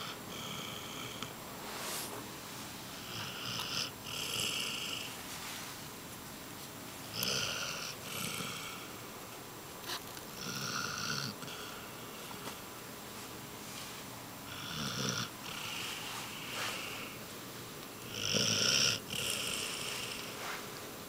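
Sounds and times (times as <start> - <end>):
dog snoring: 0.0 - 1.4, 3.0 - 5.2, 7.1 - 9.0, 9.9 - 11.9, 14.5 - 17.2, 18.0 - 20.5
dog breathing: 14.5 - 17.2, 18.1 - 20.8.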